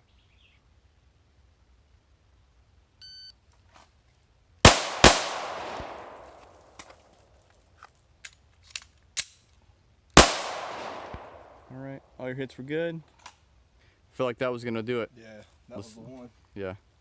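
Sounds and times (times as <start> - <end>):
loud pistol shots with echo: 4.7 - 6.7, 10.2 - 11.7.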